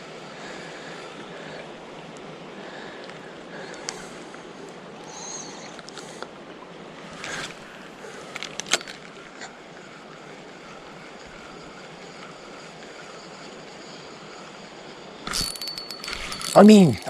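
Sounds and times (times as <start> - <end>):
river flowing: 0.0 - 17.0.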